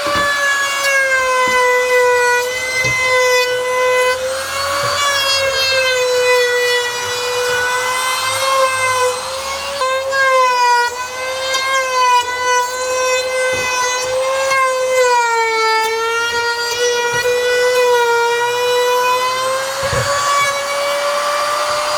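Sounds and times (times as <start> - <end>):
wood router whining: 0.0 - 21.9.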